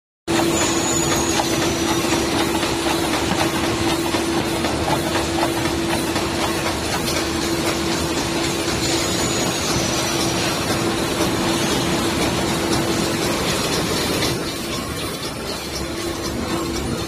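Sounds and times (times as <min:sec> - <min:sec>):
sewing machine mechanical din: 0:00.3 - 0:17.0.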